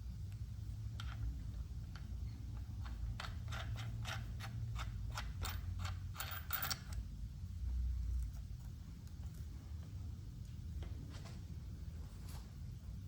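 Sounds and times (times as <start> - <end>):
low steady hum: 0.0 - 13.0
ratchet wrench clicking: 2.8 - 7.0.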